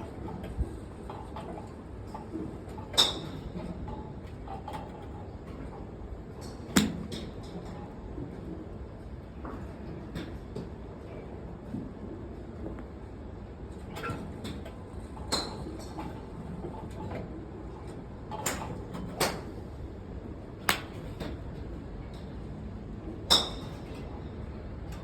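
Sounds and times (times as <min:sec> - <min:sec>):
steady background noise: 0:00.0 - 0:25.0
golf clubs striking balls: 0:06.4 - 0:07.3, 0:20.6 - 0:21.4.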